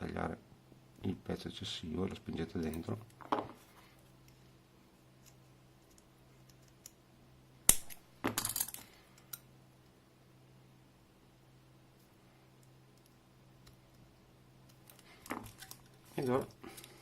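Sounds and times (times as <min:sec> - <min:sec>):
small parts clattering: 0:08.2 - 0:09.4, 0:14.7 - 0:17.0.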